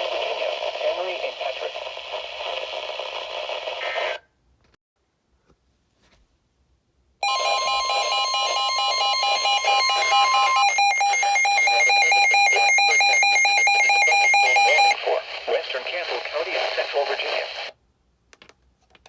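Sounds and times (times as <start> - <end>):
loud steady multi-tone alarm: 7.2 - 15.0.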